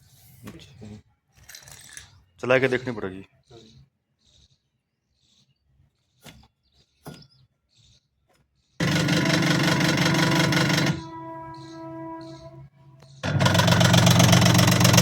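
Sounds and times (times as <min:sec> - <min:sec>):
washing machine motor humming: 0:08.8 - 0:15.0.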